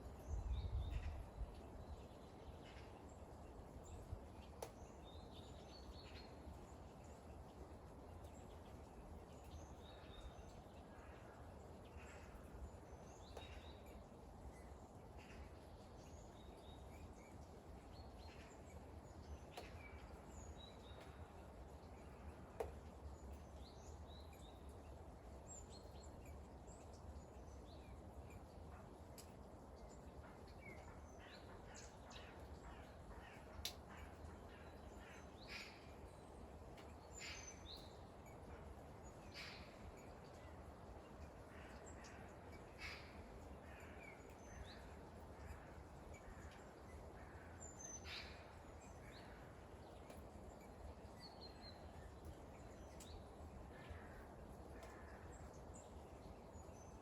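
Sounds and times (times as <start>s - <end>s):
soft rain hiss: 0.0s - 57.0s
small birds chirping: 0.1s - 57.0s
sharp drips and taps: 4.4s - 5.0s, 13.3s - 14.1s, 18.3s - 24.9s, 26.2s - 36.0s.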